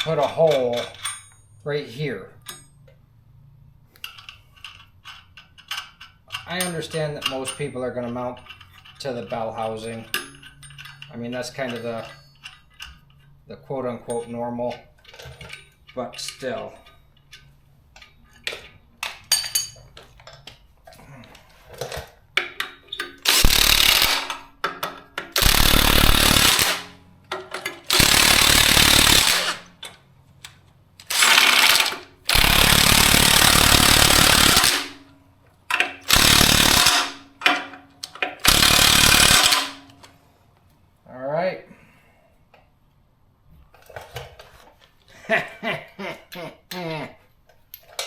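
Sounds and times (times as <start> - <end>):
impact wrench bursts: 23.1 - 24.5, 25.3 - 27.0, 27.6 - 29.8, 31.0 - 35.0, 35.8 - 37.7, 38.3 - 40.0.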